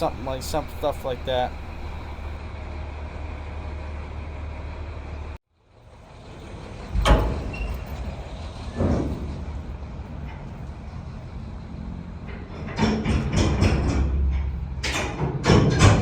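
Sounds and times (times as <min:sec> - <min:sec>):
truck engine idling: 0:00.0 - 0:02.4.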